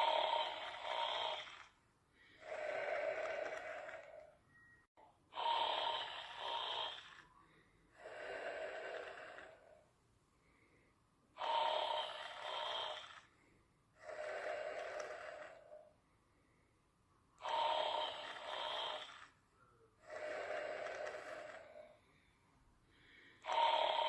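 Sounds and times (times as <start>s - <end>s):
person snoring: 0.0s - 4.4s, 5.3s - 9.8s, 11.4s - 13.3s, 14.0s - 15.8s, 17.4s - 19.4s, 20.0s - 22.0s, 23.0s - 24.0s.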